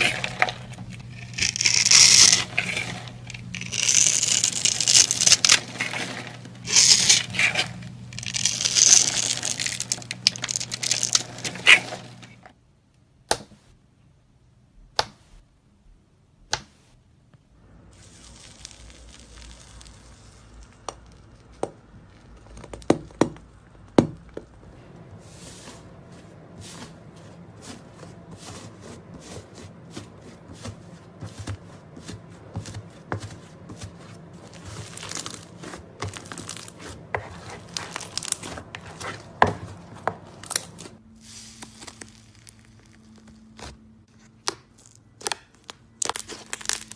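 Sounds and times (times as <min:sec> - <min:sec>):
slime crackling and popping: 0:00.0 - 0:12.4, 0:18.0 - 0:24.0, 0:34.5 - 0:39.6, 0:40.4 - 0:46.9.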